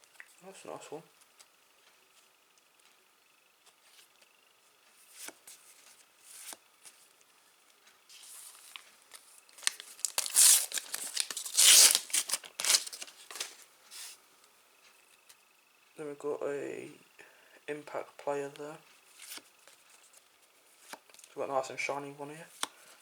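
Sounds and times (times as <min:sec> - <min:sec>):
soft paper crackles: 0:03.6 - 0:14.2
paper packet tearing and crinkling: 0:09.6 - 0:13.6.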